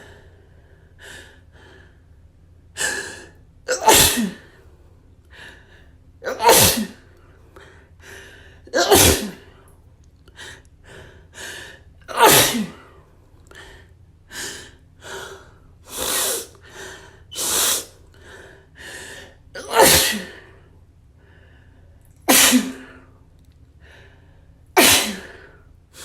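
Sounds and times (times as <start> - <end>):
person sneezing: 3.7 - 4.5, 6.2 - 7.1, 8.7 - 9.5, 12.1 - 12.9, 15.9 - 16.5, 17.3 - 18.0, 19.6 - 20.5, 22.3 - 23.0, 24.8 - 25.5.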